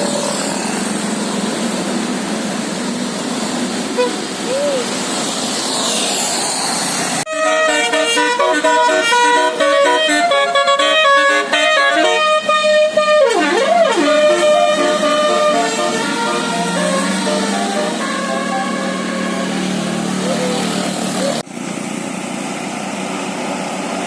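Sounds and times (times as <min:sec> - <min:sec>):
musical air horn melody: 0:03.9 - 0:04.3, 0:07.3 - 0:20.7.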